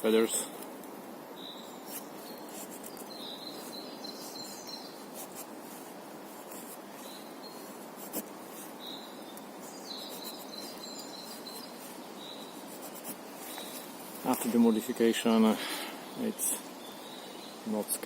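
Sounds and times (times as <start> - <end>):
outdoor background: 0.0 - 18.0.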